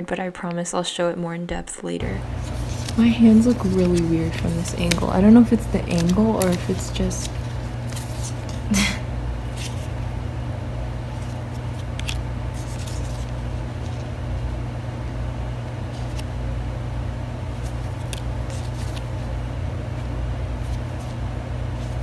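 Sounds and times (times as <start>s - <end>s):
paper and plastic rustling: 2.0s - 10.2s, 11.0s - 14.6s, 15.6s - 16.4s, 17.4s - 22.0s
low hum: 2.0s - 22.0s.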